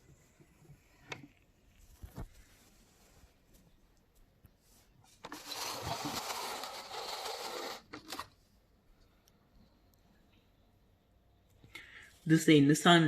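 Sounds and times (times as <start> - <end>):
toy car motor whirring: 5.3 - 8.2.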